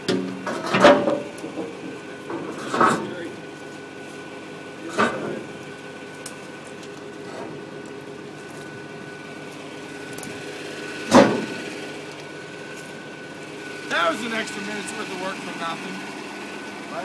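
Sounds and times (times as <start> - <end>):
excavator engine running: 0.0 - 17.0.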